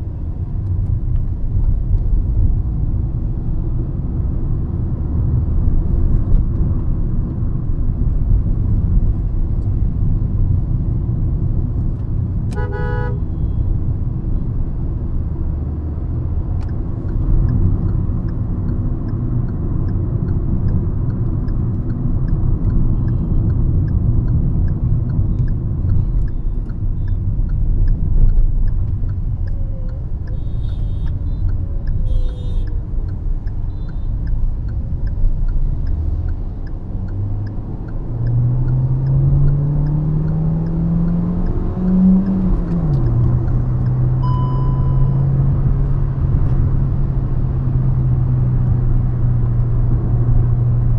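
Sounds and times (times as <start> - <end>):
road and engine rumble: 0.0 - 50.9
car horn: 12.5 - 13.7, 30.3 - 31.4, 32.0 - 32.7
high-pitched horn toots: 12.6 - 13.6
light even ticking: 13.5 - 48.8.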